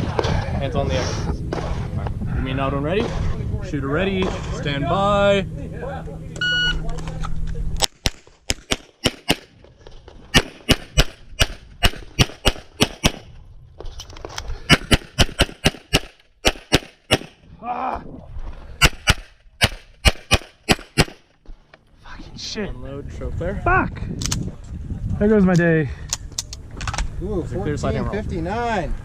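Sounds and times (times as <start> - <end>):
rapid pistol fire: 7.9 - 9.6, 10.4 - 13.3, 14.7 - 17.4, 18.8 - 21.2.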